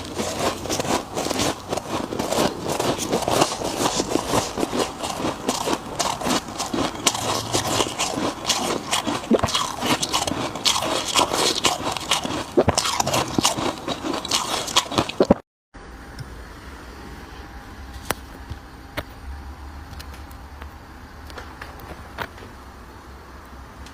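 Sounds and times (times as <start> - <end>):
crunching frost while chewing: 0.0 - 15.4.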